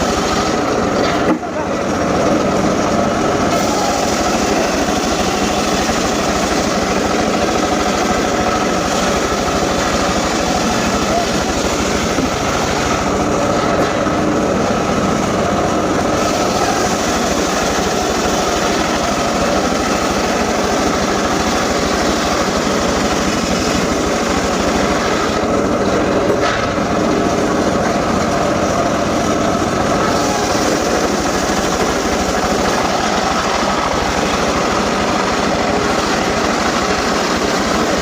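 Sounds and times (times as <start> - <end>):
engine-driven timber saw running: 0.0 - 38.0.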